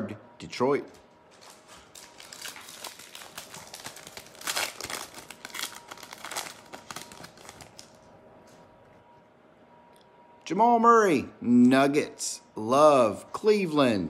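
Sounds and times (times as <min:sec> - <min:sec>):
wrapper crinkling and tearing: 0:01.4 - 0:08.1.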